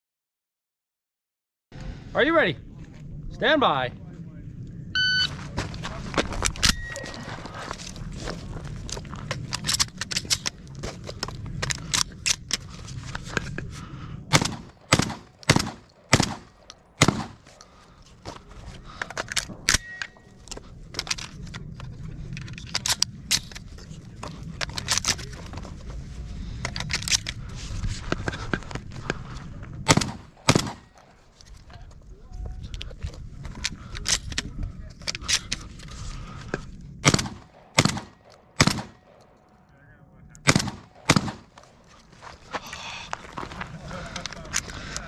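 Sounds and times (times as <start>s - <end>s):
steady low rumble: 1.7s - 45.0s
faint distant shots: 14.3s - 17.5s, 29.9s - 31.1s, 37.0s - 39.3s, 40.4s - 41.8s
loud shotgun shots: 14.3s - 17.5s, 29.9s - 30.9s, 37.0s - 39.1s, 40.4s - 41.6s.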